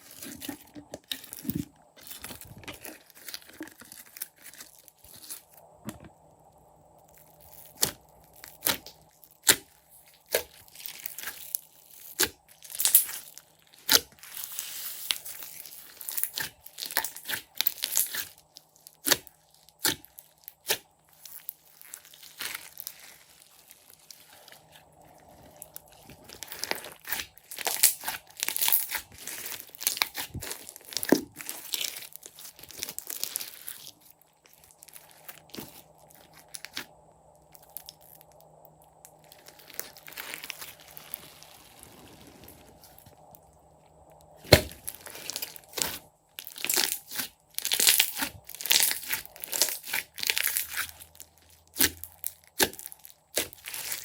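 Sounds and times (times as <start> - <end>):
slime squishing and popping: 7.5 - 9.7, 10.3 - 23.2, 25.6 - 33.9, 44.3 - 54.0.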